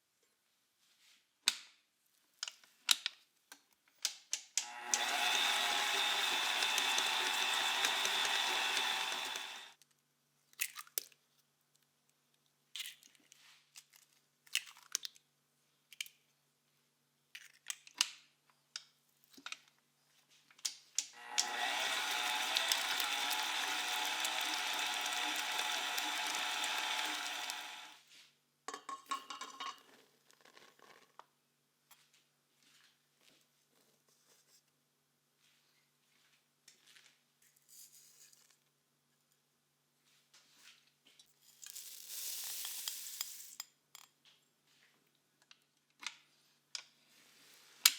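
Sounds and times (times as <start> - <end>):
kitchen utensils clicking and knocking: 4.6 - 9.7, 21.3 - 27.9, 28.7 - 29.9
kitchen appliance motor running: 4.6 - 9.8, 21.2 - 28.0.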